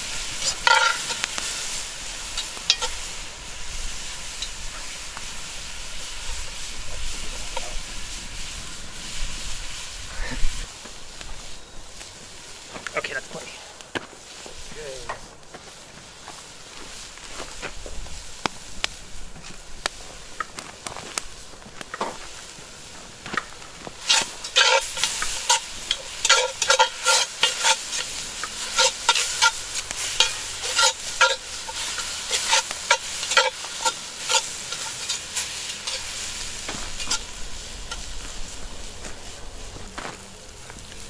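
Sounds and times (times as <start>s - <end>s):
utensil scraping metal pot: 0.0s - 10.6s, 24.0s - 39.0s
onions sizzling in butter: 0.0s - 41.0s.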